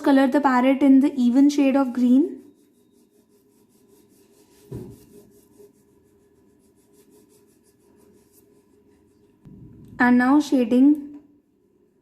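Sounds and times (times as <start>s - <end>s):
crayon rubbing on paper: 1.4s - 9.3s.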